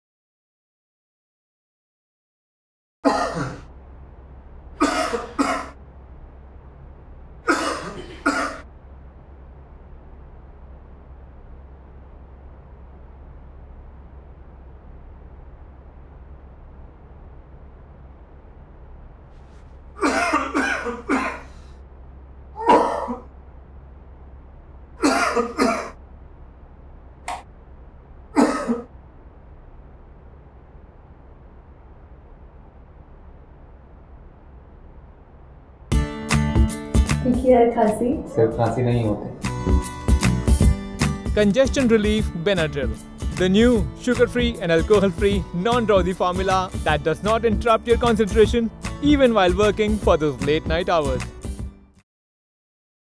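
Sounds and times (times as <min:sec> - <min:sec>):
person coughing: 0:03.0 - 0:03.7, 0:04.8 - 0:05.8, 0:07.5 - 0:08.7, 0:20.0 - 0:21.6, 0:22.6 - 0:23.3, 0:25.0 - 0:26.0, 0:28.4 - 0:28.9
steady low hum: 0:03.0 - 0:51.9.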